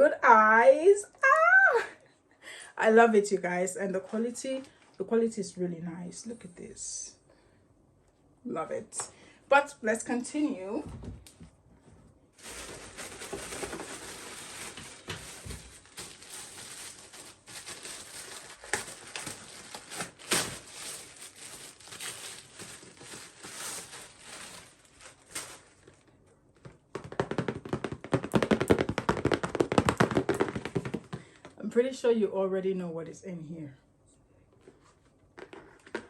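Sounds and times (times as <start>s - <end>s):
taps and thunks: 10.8s - 11.6s, 26.6s - 31.4s
package rustling and crinkling: 12.4s - 31.2s.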